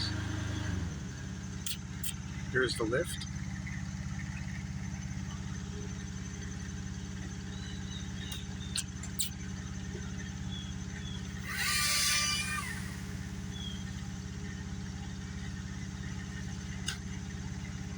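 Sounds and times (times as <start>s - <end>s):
truck engine idling: 0.0s - 17.9s.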